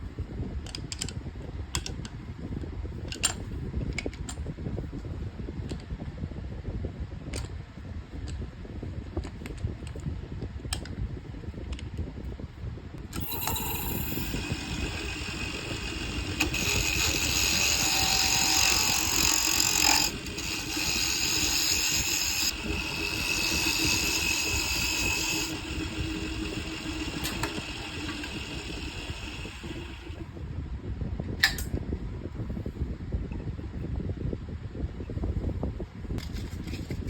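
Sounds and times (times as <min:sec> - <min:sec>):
tool scraping spinning wood: 0:13.2 - 0:30.3
wood lathe rumble: 0:13.2 - 0:30.3
sharp click: 0:31.4 - 0:31.8.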